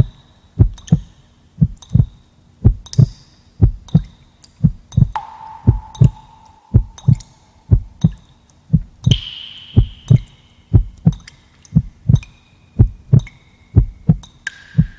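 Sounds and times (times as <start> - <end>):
heartbeat thumps: 0.0 - 11.2, 11.8 - 14.2
faint held high tones: 5.0 - 8.4.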